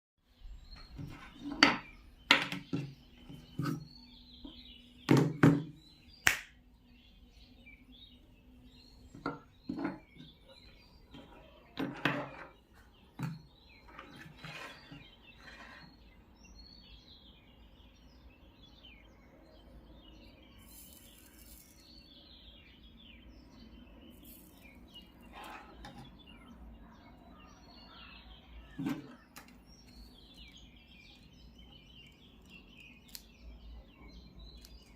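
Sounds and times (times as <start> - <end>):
birds chirping: 0.2 - 34.9.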